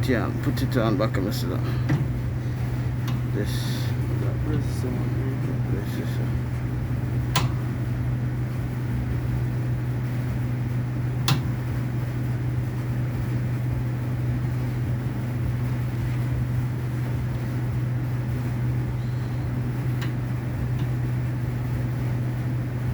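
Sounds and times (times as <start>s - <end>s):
low machine hum: 0.0s - 22.9s
sharp clicks: 7.3s - 7.7s.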